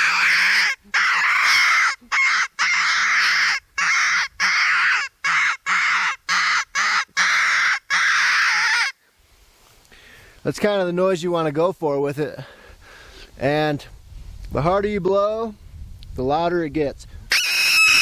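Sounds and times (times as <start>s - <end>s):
predator call raspy squeals: 0.0s - 9.0s, 17.3s - 18.0s.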